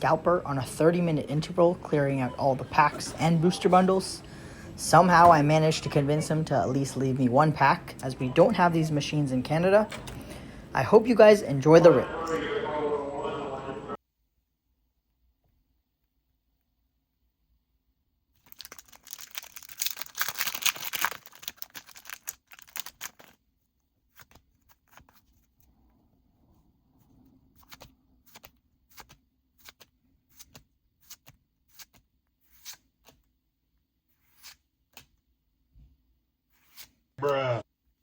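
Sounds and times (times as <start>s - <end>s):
foil wrapper tearing and crinkling: 18.4s - 23.4s.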